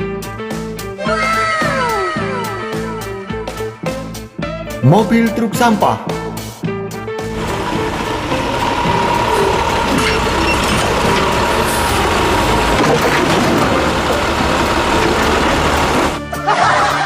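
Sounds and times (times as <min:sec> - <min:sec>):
garbage truck running: 0:07.3 - 0:16.2.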